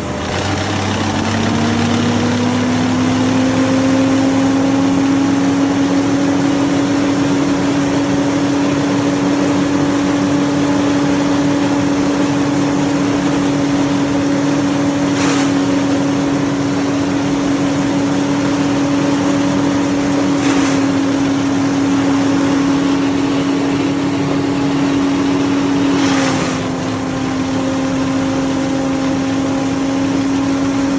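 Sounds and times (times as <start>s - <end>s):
wood chipper engine humming: 0.0s - 30.9s
bursts of noise: 13.2s - 27.4s.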